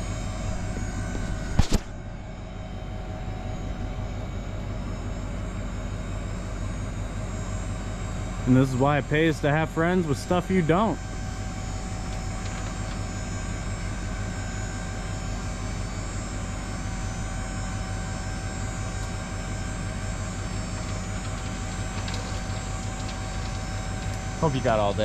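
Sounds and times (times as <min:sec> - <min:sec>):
hydraulic pump whining: 0:07.8 - 0:25.0.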